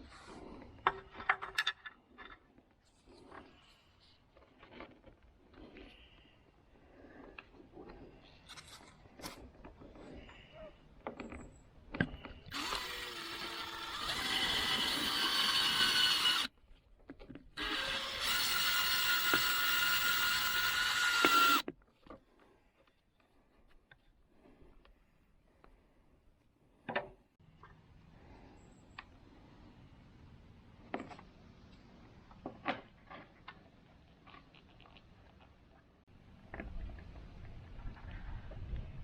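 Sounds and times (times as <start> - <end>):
power drill whine: 12.5 - 16.5, 17.6 - 21.6.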